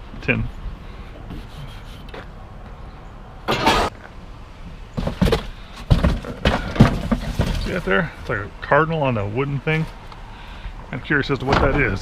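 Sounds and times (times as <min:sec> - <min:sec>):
items scraping in dumpster: 0:05.0 - 0:08.2.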